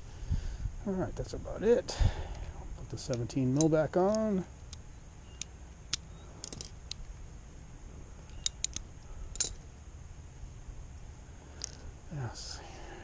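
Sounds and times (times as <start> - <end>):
low steady background rumble: 0.0 - 13.0
hand tools clicking and tapping: 2.3 - 7.1, 8.3 - 9.6.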